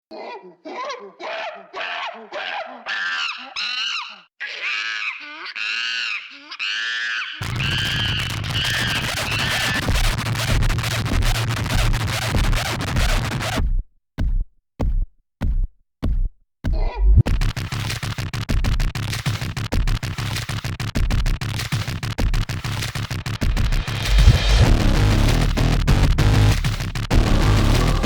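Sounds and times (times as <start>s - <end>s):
chimpanzee hooting and screaming: 0.7s - 9.7s
music with heavy bass beat: 7.4s - 13.8s, 17.2s - 28.0s.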